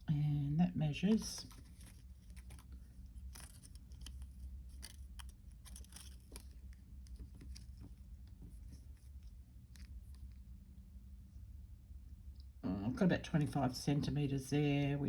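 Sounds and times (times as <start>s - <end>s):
steady low hum: 0.0s - 15.0s
thin wire ticking and rustling: 1.1s - 10.4s.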